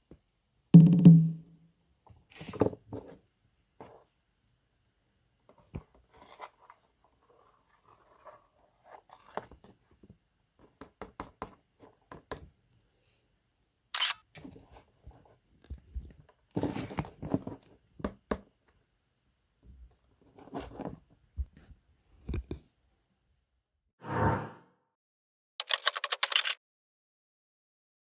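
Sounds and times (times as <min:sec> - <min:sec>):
toy packaging crinkling: 0:25.6 - 0:26.6.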